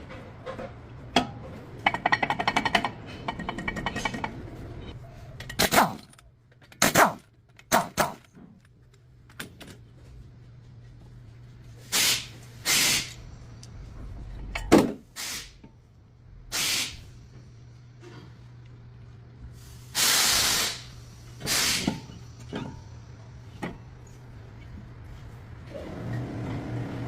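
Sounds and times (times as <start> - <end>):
hissing spray bursts: 11.9 - 13.2, 15.2 - 15.6, 16.5 - 17.1, 19.6 - 22.0.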